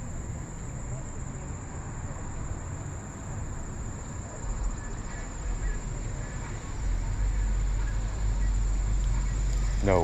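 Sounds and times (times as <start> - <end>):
high-pitched insect chorus: 0.0 - 10.0
low rumble: 4.5 - 10.0.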